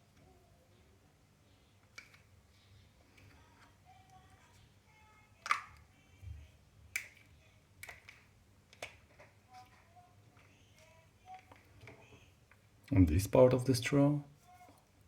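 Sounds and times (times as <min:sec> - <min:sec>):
plastic bottle parts clicking: 0:05.4 - 0:05.8, 0:07.8 - 0:09.3.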